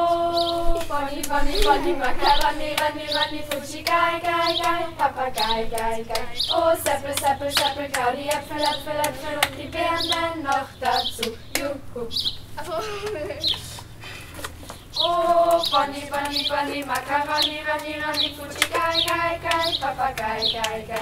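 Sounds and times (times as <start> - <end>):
group of voices singing: 0.0 - 12.4, 15.0 - 21.0
sharp hand claps: 5.4 - 11.7, 15.5 - 21.0.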